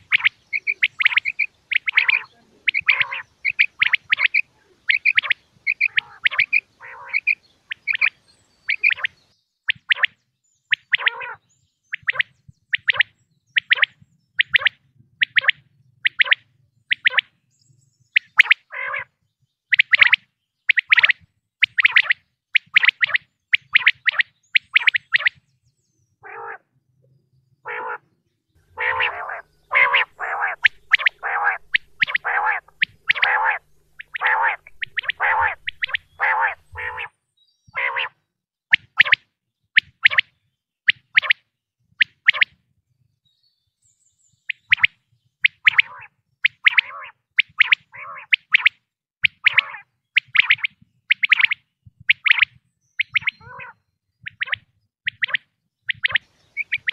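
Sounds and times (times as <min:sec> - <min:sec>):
quail calling: 0:00.0 - 0:17.3, 0:18.2 - 0:25.4, 0:26.2 - 0:26.7, 0:27.6 - 0:37.1, 0:37.7 - 0:39.2, 0:44.7 - 0:56.9
steady low hum: 0:28.6 - 0:37.0.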